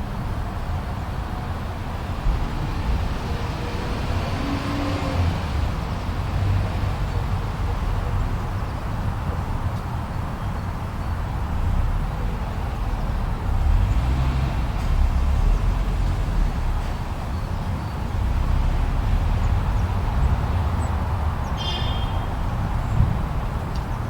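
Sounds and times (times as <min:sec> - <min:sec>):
wind blowing in gusts: 0:19.4 - 0:24.0.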